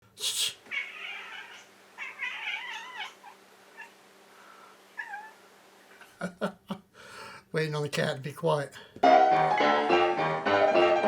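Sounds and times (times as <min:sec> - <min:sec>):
cat meowing: 0:00.7 - 0:03.9, 0:05.0 - 0:05.4.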